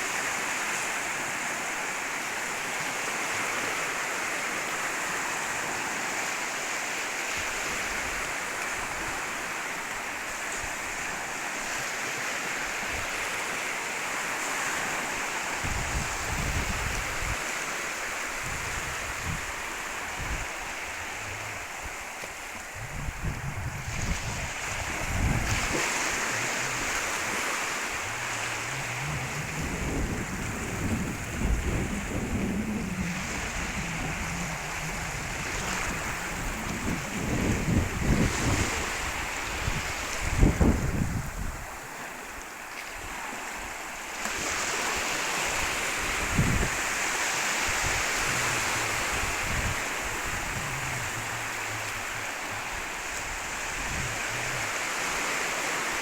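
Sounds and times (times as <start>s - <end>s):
sea waves washing onto beach: 0.0s - 56.0s
wind buffeting microphone: 15.6s - 17.6s, 18.3s - 41.9s, 44.7s - 55.9s.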